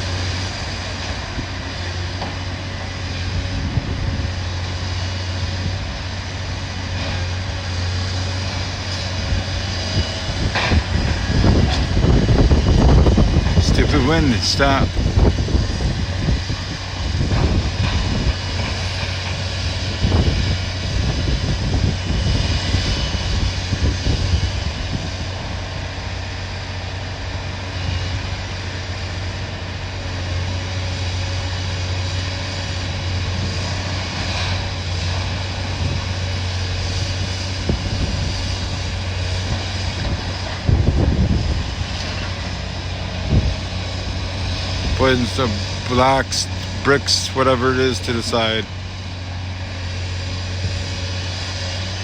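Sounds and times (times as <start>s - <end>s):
demolition machinery engine drone: 0.0s - 52.0s
wind buffeting microphone: 2.8s - 8.4s, 9.0s - 25.9s, 33.1s - 46.8s.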